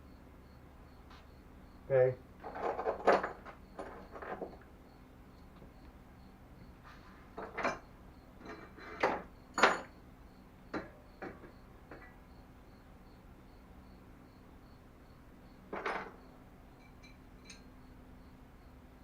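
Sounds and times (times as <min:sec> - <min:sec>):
small metal parts clinking: 0:16.8 - 0:17.7.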